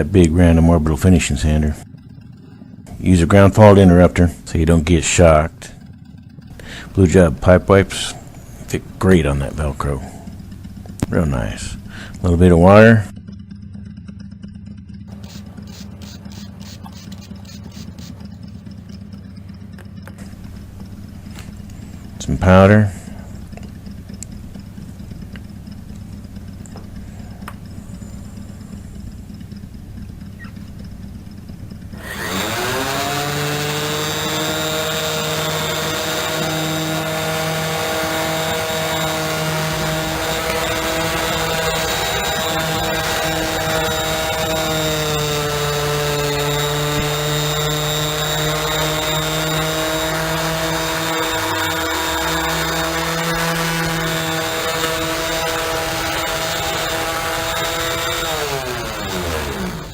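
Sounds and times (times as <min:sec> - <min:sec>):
low mechanical hum: 0:00.0 - 0:59.9
orbital sander motor whine: 0:15.1 - 0:22.6, 0:31.9 - 0:59.9.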